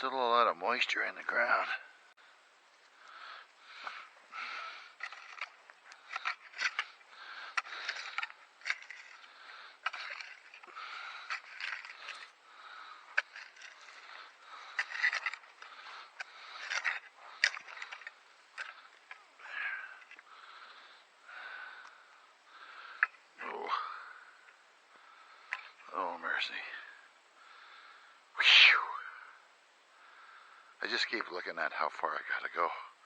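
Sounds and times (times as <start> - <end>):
tool scraping damp soil: 3.7 - 19.4.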